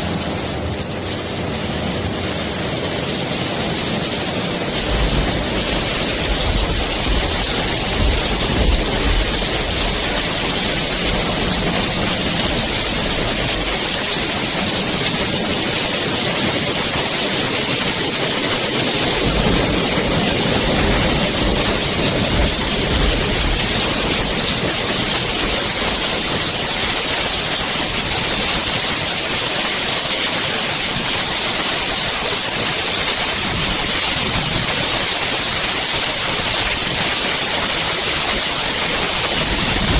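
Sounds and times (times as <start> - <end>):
heavy rain hissing: 0.0 - 39.9
low rumble: 4.7 - 13.8.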